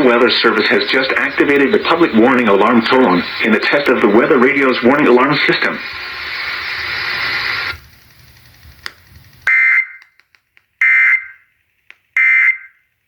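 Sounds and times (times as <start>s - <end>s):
radio hiss: 0.0s - 10.0s.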